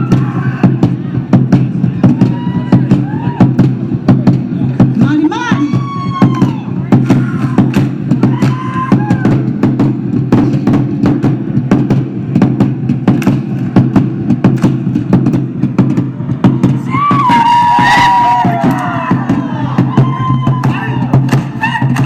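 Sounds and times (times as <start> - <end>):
drum ensemble playing fast rhythm: 0.0 - 22.0
low drum: 0.0 - 22.0
sharp wooden strikes: 6.2 - 22.0.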